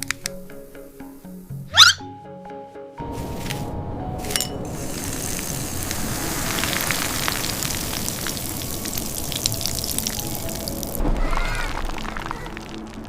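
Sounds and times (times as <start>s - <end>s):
irregular ticks and clicks: 0.0s - 0.9s
dense crackling hiss: 3.0s - 13.0s.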